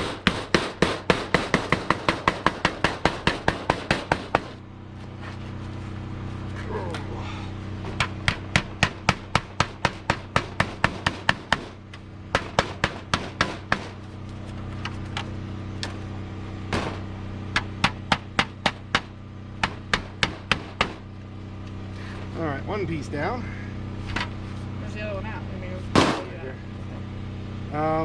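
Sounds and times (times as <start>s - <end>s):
hammer driving nails into wood: 0.0s - 4.5s, 8.0s - 11.7s.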